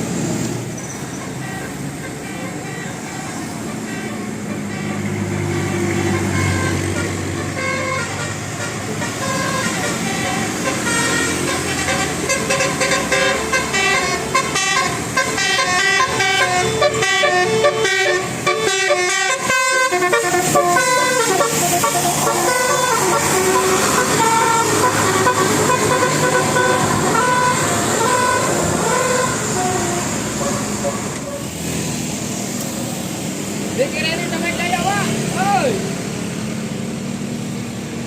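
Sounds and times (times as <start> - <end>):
musical bus air horn: 1.2 - 31.4.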